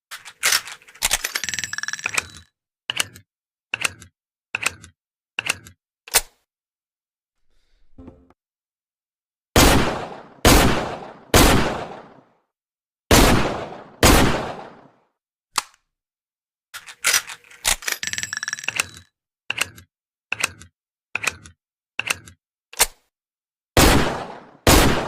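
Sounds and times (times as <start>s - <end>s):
metallic clicks and rattles: 0.1s - 6.2s, 16.8s - 22.9s
revolver gunshots echoing: 9.6s - 12.3s, 13.1s - 15.0s, 23.8s - 25.0s.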